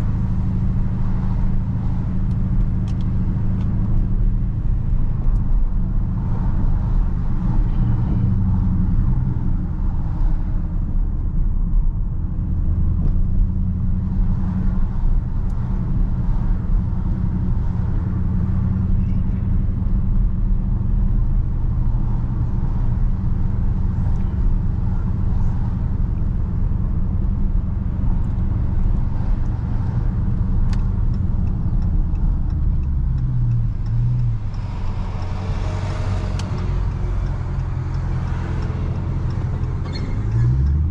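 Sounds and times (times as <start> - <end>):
car engine exhaust rumble: 0.0 - 40.9.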